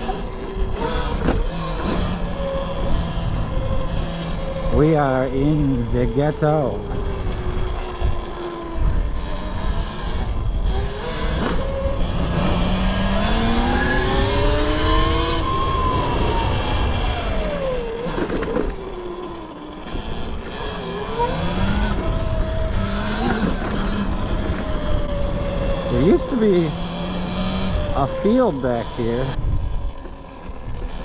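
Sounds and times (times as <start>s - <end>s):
electric motorbike motor whining: 0.0s - 31.0s
wind on microphone: 20.1s - 31.0s.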